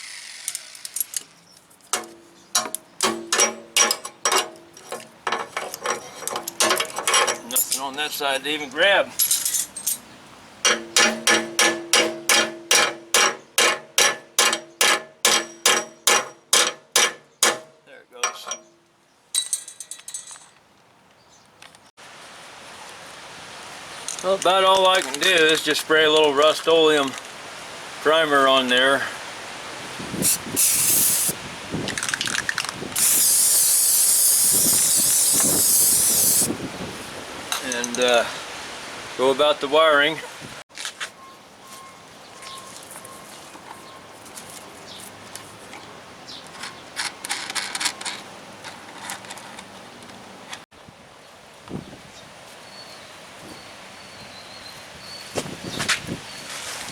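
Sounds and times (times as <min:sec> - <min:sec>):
hammer striking steel: 0:02.0 - 0:04.6, 0:10.6 - 0:18.7
spray can hissing: 0:30.2 - 0:31.4, 0:33.0 - 0:36.5
spray can rattling: 0:30.2 - 0:36.5.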